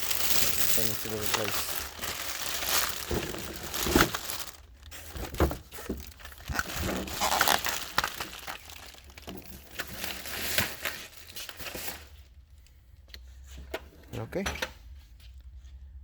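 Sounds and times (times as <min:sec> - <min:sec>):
sharp crackles and knocks: 0:00.0 - 0:10.8
packaging crinkling and rustling: 0:00.0 - 0:12.4.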